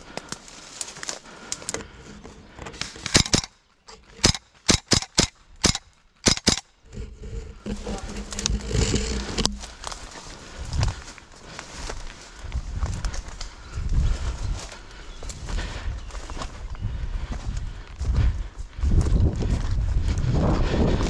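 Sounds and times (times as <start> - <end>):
airsoft gun shots: 4.2 - 6.6
steady noise: 6.4 - 9.8.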